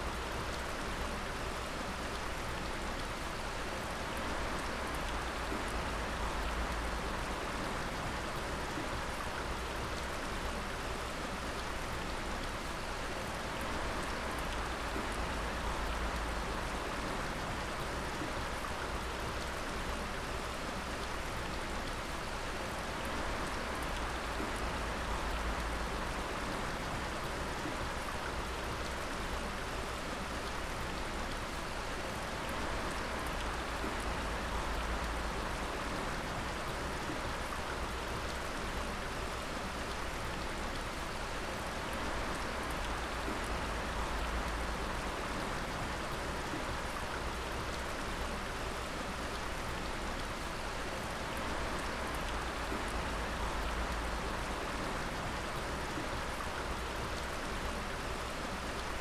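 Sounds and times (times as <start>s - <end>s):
water dripping and splashing: 0.0s - 59.0s
running water rushing: 12.3s - 59.0s.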